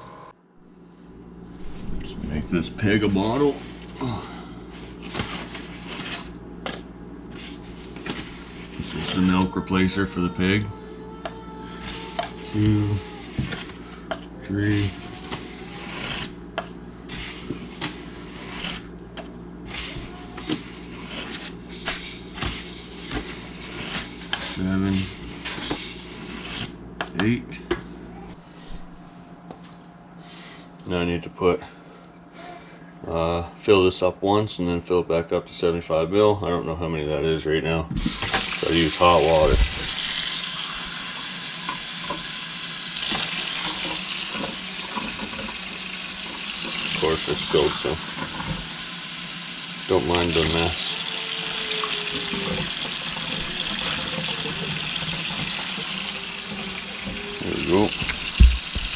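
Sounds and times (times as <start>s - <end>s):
low hum: 0.0s - 4.9s
water running from a tap: 38.0s - 58.9s.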